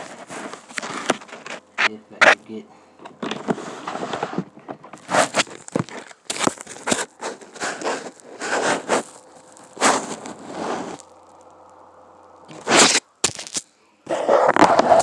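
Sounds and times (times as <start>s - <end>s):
phone handling noises: 3.0s - 10.4s.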